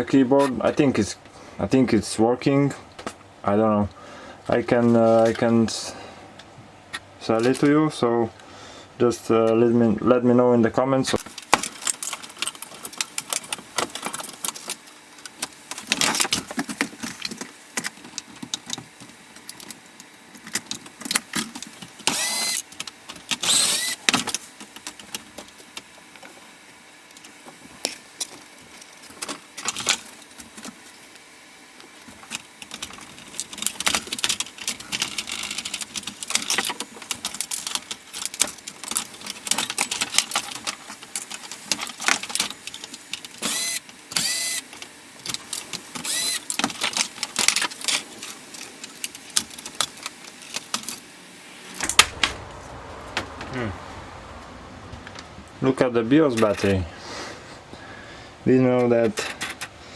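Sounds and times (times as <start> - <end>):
laptop parts clicking and rattling: 11.2 - 26.4, 28.2 - 30.8, 32.0 - 43.5, 44.1 - 51.0.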